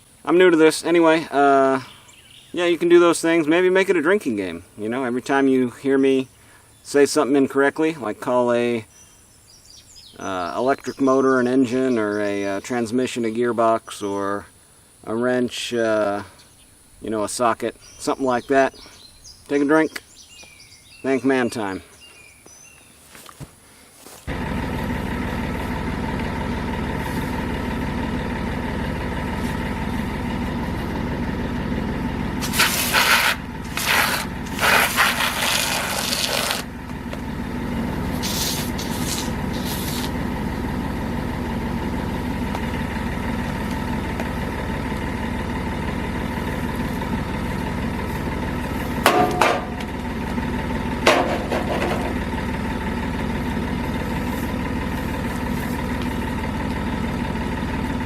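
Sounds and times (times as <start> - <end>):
diesel truck engine idling: 23.8 - 58.0.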